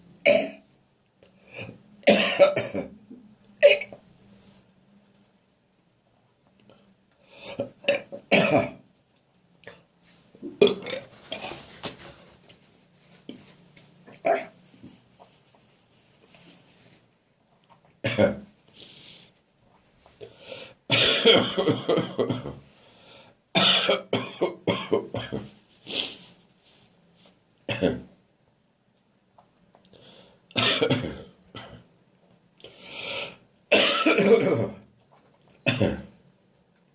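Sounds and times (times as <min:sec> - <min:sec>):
man coughing harshly: 0:02.1 - 0:02.9, 0:07.9 - 0:08.8, 0:20.9 - 0:22.6, 0:23.6 - 0:25.5, 0:30.6 - 0:31.8, 0:33.7 - 0:34.8, 0:35.7 - 0:36.1.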